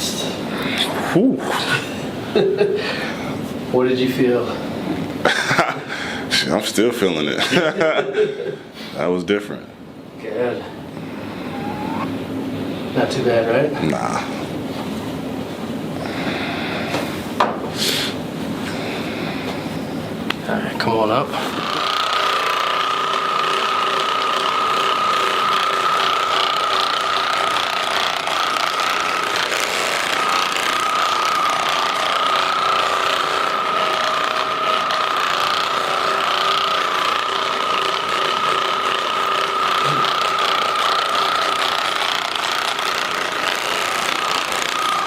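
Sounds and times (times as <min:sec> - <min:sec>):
massage gun running: 0:10.8 - 0:17.5, 0:18.6 - 0:45.0.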